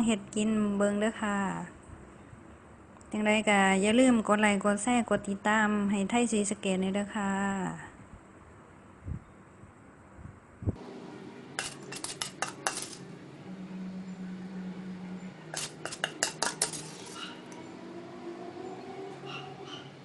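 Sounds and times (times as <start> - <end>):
utensils clinking against dish: 11.6 - 13.0, 15.6 - 17.4.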